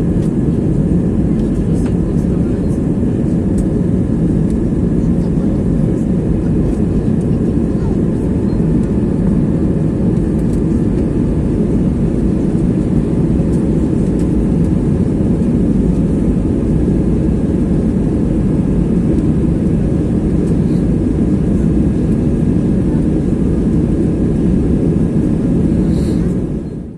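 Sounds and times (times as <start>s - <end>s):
airliner cabin engine noise: 0.0s - 26.9s.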